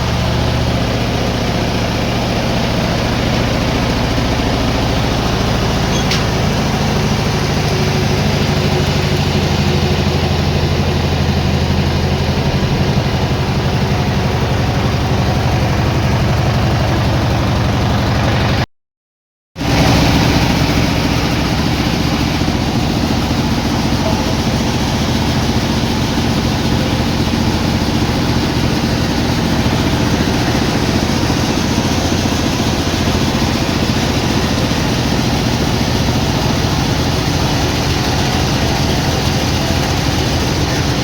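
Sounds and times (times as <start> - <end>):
sawmill machinery hum: 0.0 - 18.6, 19.6 - 41.0.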